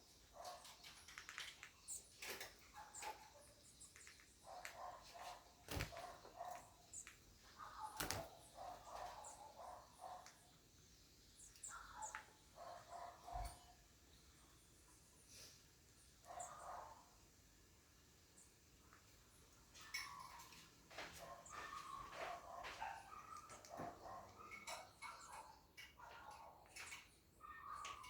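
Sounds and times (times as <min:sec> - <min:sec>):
birds calling: 0:00.0 - 0:13.8, 0:19.8 - 0:28.0.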